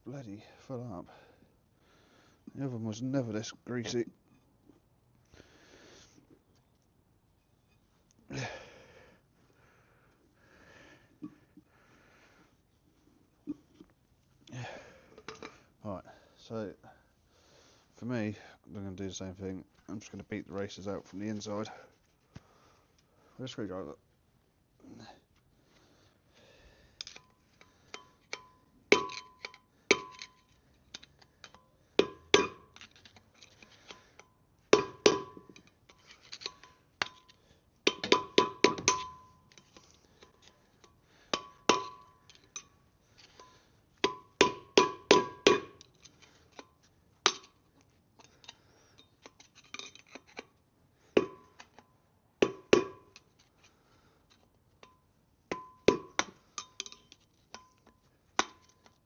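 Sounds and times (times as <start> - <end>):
hammer striking metal: 32.0 - 32.6, 37.9 - 39.3, 44.0 - 45.8.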